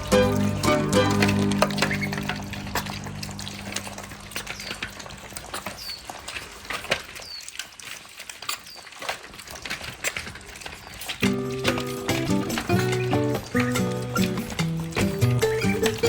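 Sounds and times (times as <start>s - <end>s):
music: 0.0s - 4.0s, 11.2s - 16.0s
dogs crunching on bones: 0.0s - 16.0s.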